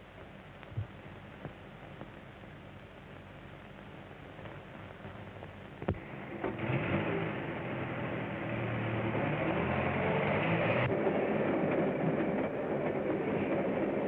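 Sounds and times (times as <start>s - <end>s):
vehicle running: 6.0s - 11.1s.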